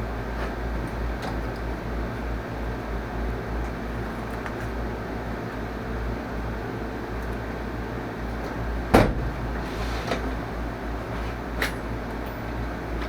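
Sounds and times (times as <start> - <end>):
low workshop hum: 0.0 - 13.0.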